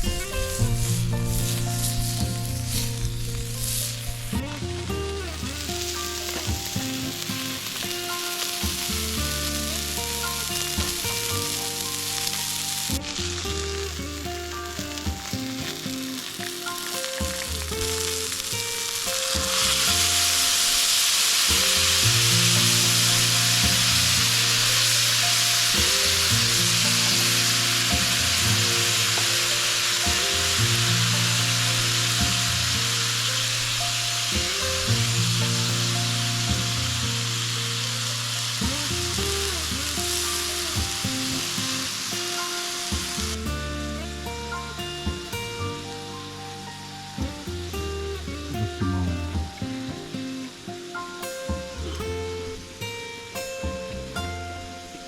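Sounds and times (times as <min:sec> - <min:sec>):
background music: 0:00.0 - 0:55.0
steak sizzling on a griddle: 0:00.0 - 0:55.0.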